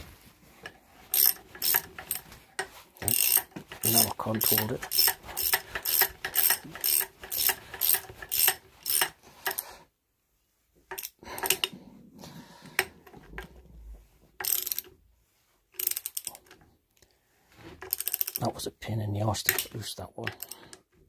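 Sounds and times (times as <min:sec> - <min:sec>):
ratchet wrench clicking: 0:01.1 - 0:02.2, 0:03.0 - 0:09.6, 0:14.4 - 0:14.8, 0:15.8 - 0:16.4, 0:17.8 - 0:18.4.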